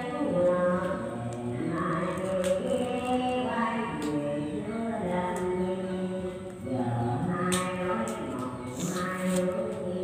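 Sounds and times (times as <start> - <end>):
background music with singing voices: 0.0 - 10.0.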